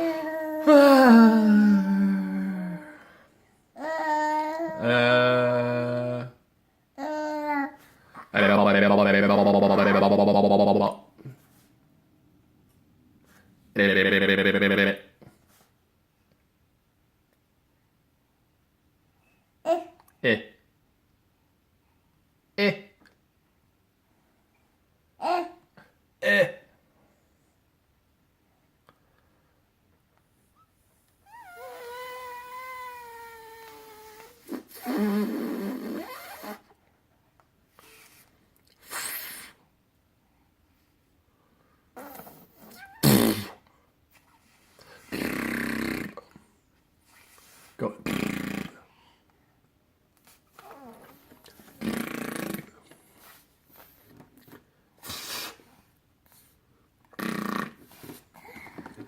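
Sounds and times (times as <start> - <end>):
person making cat-like held tone: 0.0 - 3.0, 31.3 - 36.0
person making raspy noise: 0.0 - 3.0, 4.7 - 6.3, 45.1 - 46.2
person making throaty noises: 0.0 - 3.1, 4.7 - 6.4, 42.0 - 43.7, 45.0 - 46.3, 48.0 - 48.9, 50.6 - 52.9, 57.1 - 59.0
person hissing breath: 37.8 - 39.6, 55.0 - 55.8.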